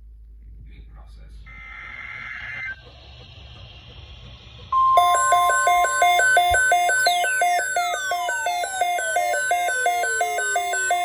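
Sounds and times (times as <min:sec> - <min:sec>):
warbling alternating tones: 0:01.5 - 0:11.0
loud steady alarm tone: 0:04.6 - 0:11.0
falling pitch sweeps: 0:04.8 - 0:11.0.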